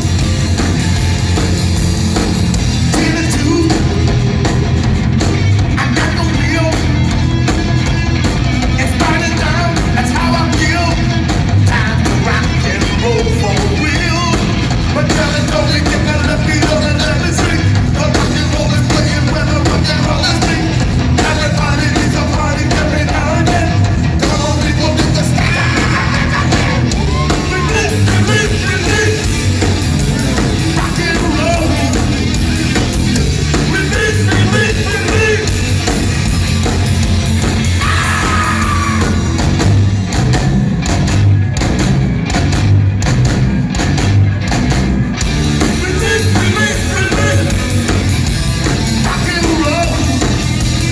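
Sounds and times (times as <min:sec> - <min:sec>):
punk rock band playing live: 0:00.0 - 0:50.9
person singing: 0:11.7 - 0:29.4, 0:45.7 - 0:48.0.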